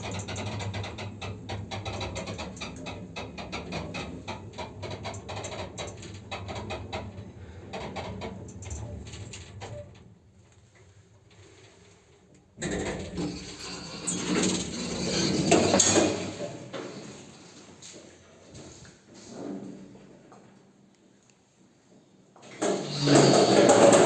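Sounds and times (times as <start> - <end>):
elevator creaks and rattles: 0.0 - 10.2, 12.6 - 17.5, 22.6 - 24.0.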